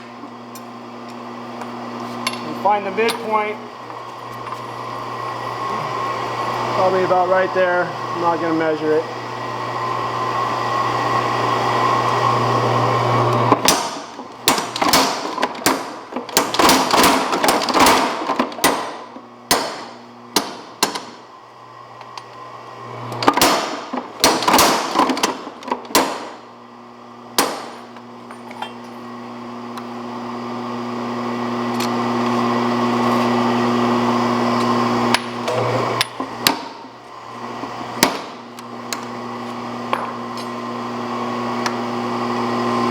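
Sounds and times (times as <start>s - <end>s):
hammer striking hot steel: 19.5s - 21.0s, 27.4s - 27.8s.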